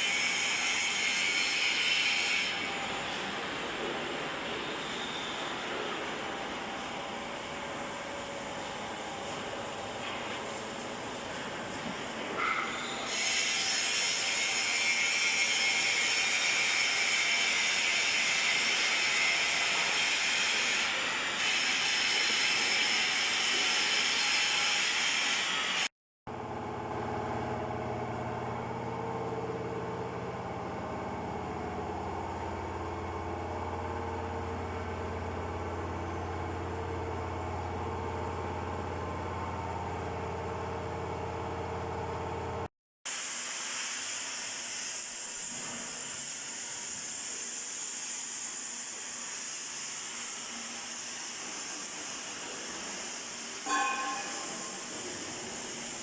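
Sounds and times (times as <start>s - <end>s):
workshop machinery hissing rush: 0.0s - 25.9s, 43.1s - 56.0s
machine hum with low drone: 26.3s - 42.7s.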